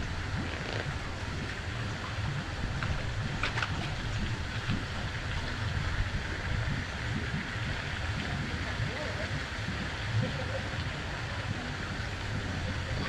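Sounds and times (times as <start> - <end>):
steady outdoor hiss: 0.0 - 13.0
wind rumbling on microphone: 0.0 - 13.0.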